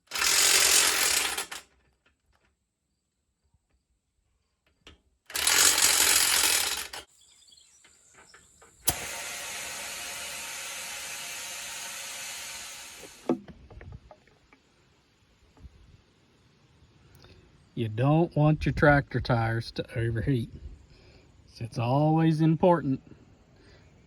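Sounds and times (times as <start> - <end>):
compressed air hissing from hose: 8.9 - 13.4.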